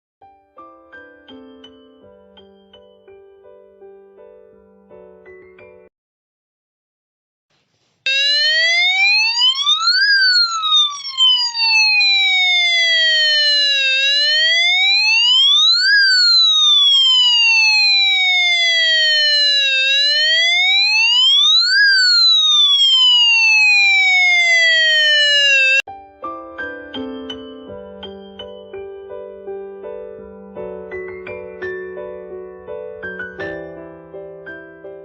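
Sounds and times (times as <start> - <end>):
electronic police siren wail: 8.1 - 25.9.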